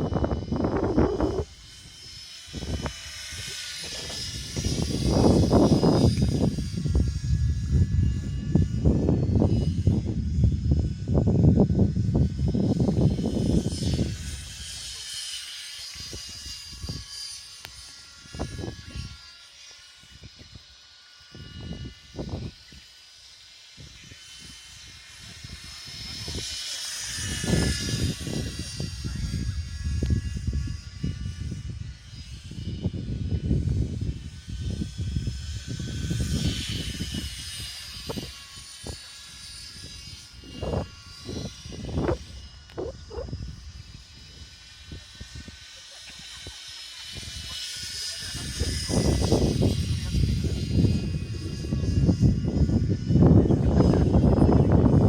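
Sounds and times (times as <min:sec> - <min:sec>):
wind rumbling on microphone: 0:00.0 - 0:19.3, 0:20.0 - 0:22.9, 0:23.7 - 0:55.0
helicopter motor and rotor whine: 0:00.0 - 0:55.0.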